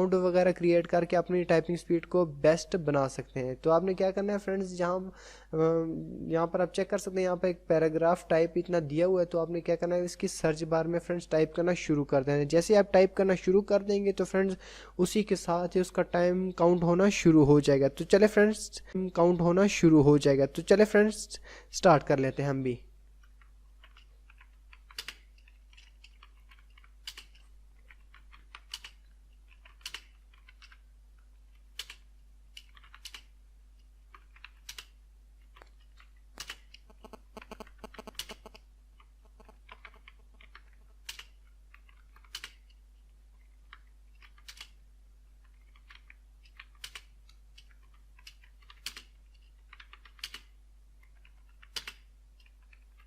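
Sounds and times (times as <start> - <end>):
typing on computer keyboard: 23.3 - 30.8, 31.5 - 33.3, 34.1 - 42.8, 43.7 - 44.8, 45.4 - 53.0.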